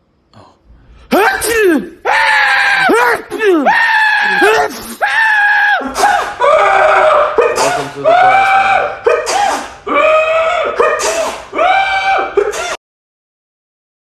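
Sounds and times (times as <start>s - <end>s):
loud high screams: 1.1s - 12.8s
short sneezes: 7.5s - 7.9s, 9.1s - 9.8s, 10.9s - 11.5s.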